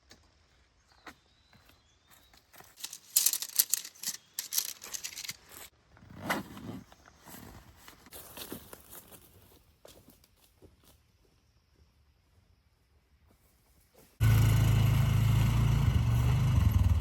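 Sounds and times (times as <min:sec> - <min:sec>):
rustling and crinkling: 0:02.6 - 0:10.4.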